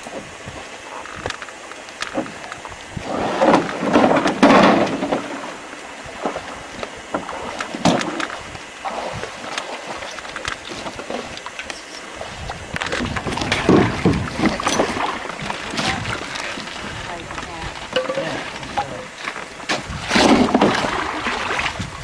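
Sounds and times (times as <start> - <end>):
paddle splashing in water: 0.0 - 22.0
rushing water: 0.0 - 22.0
paddle knocking on hull: 12.9 - 21.6.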